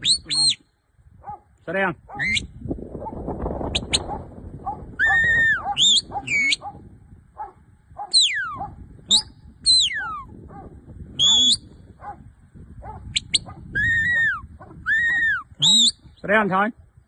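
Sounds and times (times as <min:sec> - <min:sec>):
dog barking: 0:01.2 - 0:01.5, 0:02.1 - 0:02.3, 0:03.0 - 0:03.2, 0:04.0 - 0:08.8, 0:10.0 - 0:11.4, 0:12.0 - 0:15.3
dog whining and yelping: 0:05.0 - 0:06.6, 0:09.9 - 0:10.3, 0:13.4 - 0:15.5.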